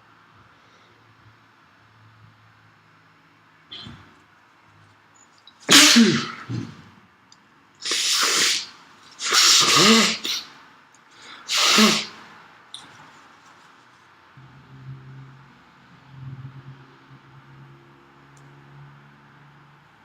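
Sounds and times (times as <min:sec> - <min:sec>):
person sneezing: 0:03.7 - 0:04.1, 0:05.7 - 0:06.9, 0:07.8 - 0:10.6, 0:11.2 - 0:12.2.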